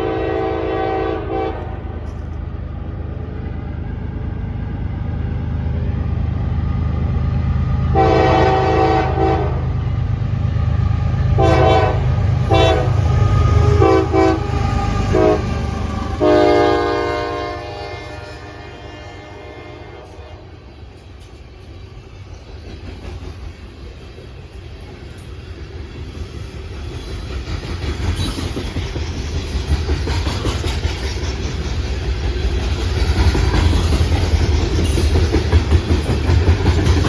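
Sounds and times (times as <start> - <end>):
locomotive air horn blasts: 0.0 - 2.1, 7.9 - 9.7, 11.4 - 20.7
diesel train rumble: 0.0 - 37.0.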